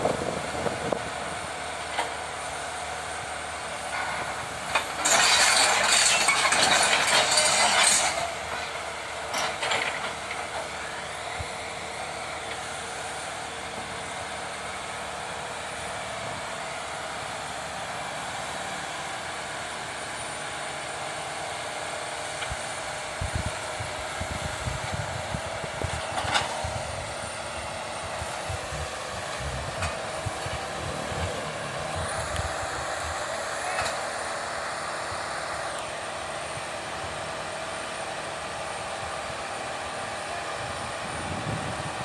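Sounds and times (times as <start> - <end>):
excavator diesel engine running: 0.0 - 42.0
low rumbling: 28.0 - 33.3.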